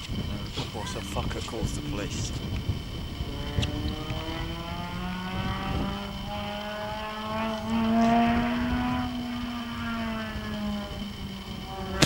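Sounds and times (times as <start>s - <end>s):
distant car engine accelerating: 3.1s - 12.0s.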